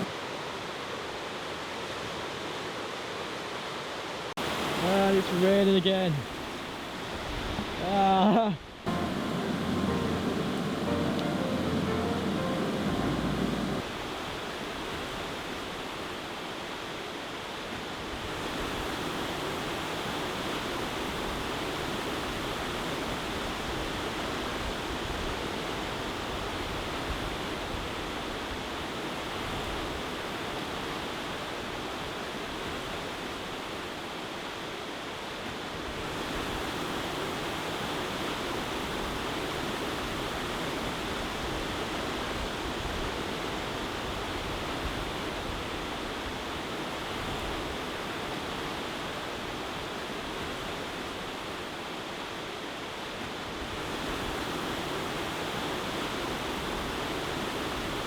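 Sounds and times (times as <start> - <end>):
river rushing over rapids: 0.0 - 14.2.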